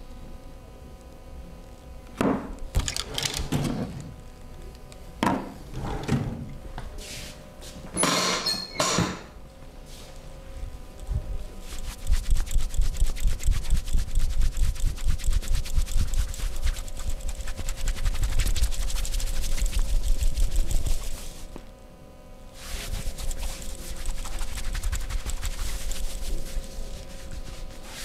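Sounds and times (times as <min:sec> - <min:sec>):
hands slapping skin in massage: 0:11.8 - 0:21.2, 0:22.9 - 0:26.2.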